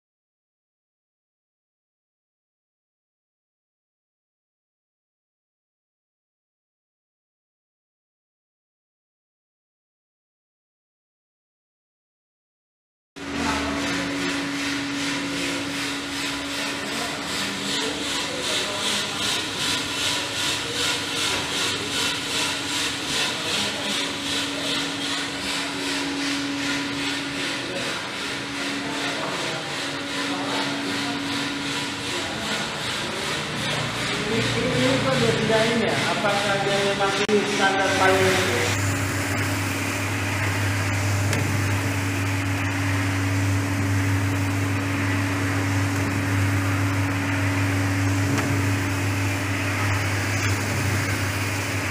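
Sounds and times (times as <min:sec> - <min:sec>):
coffee roasting machine hum: 0:13.2 - 0:51.9.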